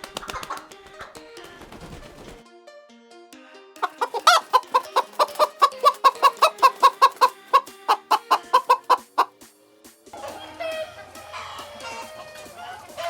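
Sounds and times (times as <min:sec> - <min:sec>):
chicken clucking: 0:03.8 - 0:09.4.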